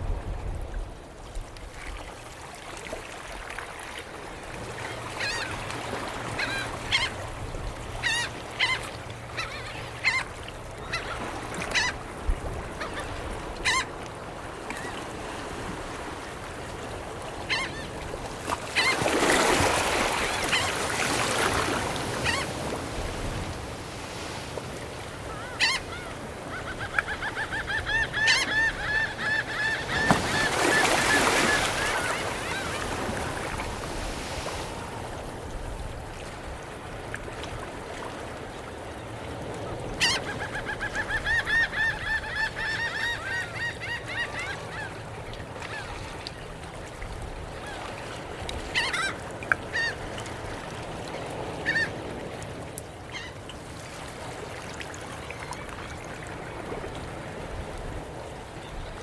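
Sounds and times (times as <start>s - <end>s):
waves washing in: 0.0s - 40.3s
seagulls calling: 6.2s - 7.2s, 8.0s - 12.0s, 17.4s - 18.0s, 18.7s - 22.7s, 24.2s - 34.9s, 39.9s - 45.0s, 48.7s - 50.0s, 51.6s - 52.0s.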